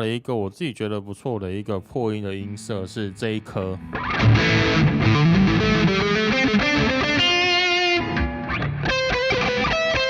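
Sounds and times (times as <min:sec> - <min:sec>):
distorted electric guitar: 0:02.3 - 0:10.0.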